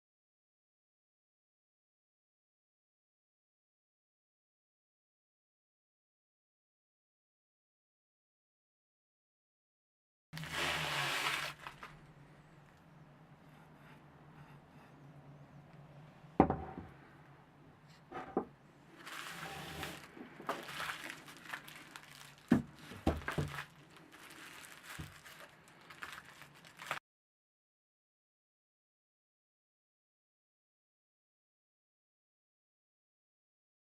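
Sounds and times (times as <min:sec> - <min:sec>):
crinkling and rustling: 0:10.4 - 0:12.9, 0:17.9 - 0:27.0
faint low hum: 0:11.7 - 0:19.1.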